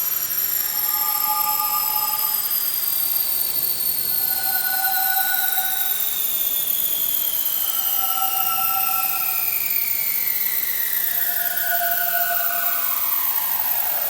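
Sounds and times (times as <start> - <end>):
high whining tones: 3.9 - 14.0.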